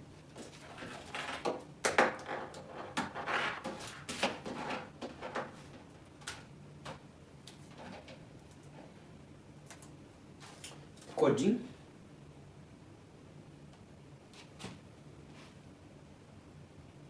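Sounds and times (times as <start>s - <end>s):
objects handled on a desk: 0.3s - 8.9s.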